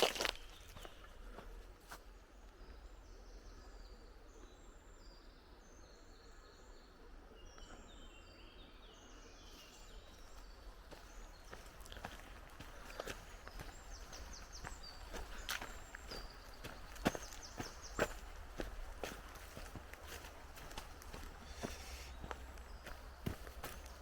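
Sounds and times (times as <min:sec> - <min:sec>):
songbird chirping: 0:00.0 - 0:24.0
soft footsteps: 0:10.3 - 0:24.0.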